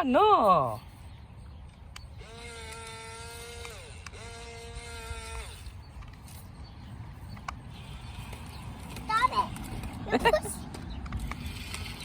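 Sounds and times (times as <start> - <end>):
toy electric motor whining: 2.1 - 6.5.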